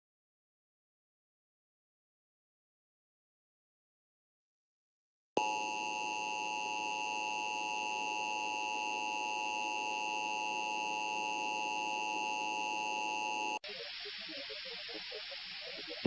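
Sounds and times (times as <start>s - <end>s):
steady electronic alert tone: 5.4s - 13.6s.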